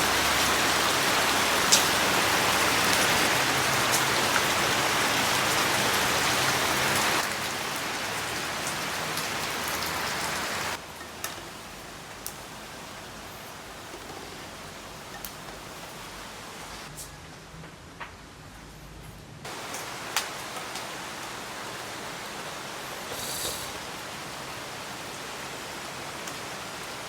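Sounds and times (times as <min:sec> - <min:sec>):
rain falling: 0:00.0 - 0:16.9, 0:19.4 - 0:27.0
raindrop ticks: 0:01.6 - 0:04.5, 0:10.8 - 0:12.4, 0:19.5 - 0:21.4.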